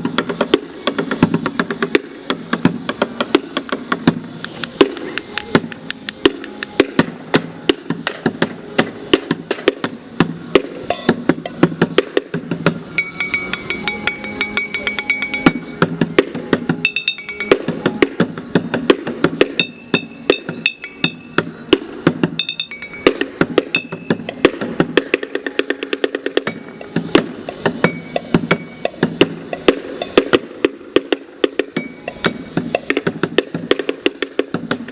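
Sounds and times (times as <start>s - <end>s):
drummer striking bottles: 10.2s - 25.4s, 26.4s - 30.5s, 31.7s - 33.2s.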